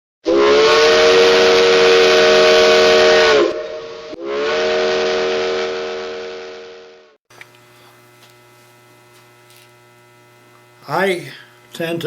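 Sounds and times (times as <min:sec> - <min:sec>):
steam locomotive whistle: 0:00.2 - 0:07.2.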